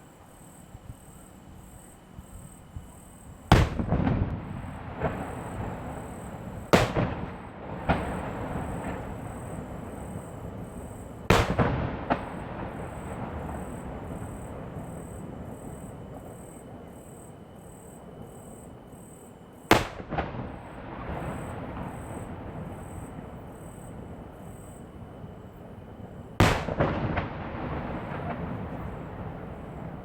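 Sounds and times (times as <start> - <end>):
fireworks booming: 2.8 - 17.0, 19.7 - 30.0
small firework pops: 3.5 - 9.6, 11.3 - 13.6, 19.7 - 21.9, 26.4 - 30.0
rolling echo: 3.5 - 16.3, 19.7 - 30.0.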